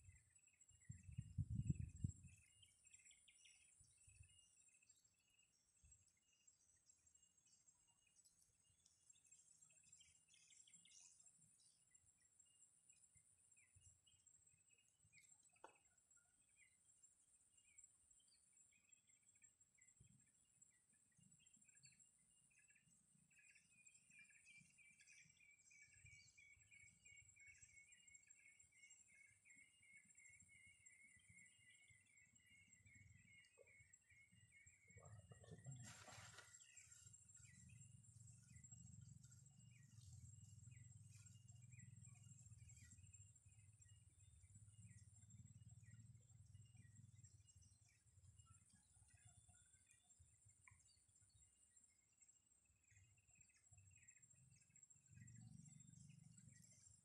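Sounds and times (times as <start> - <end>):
bird chirps: 0.0 - 57.0
falling bird chirps: 34.9 - 43.1
brief rustle: 35.8 - 37.1.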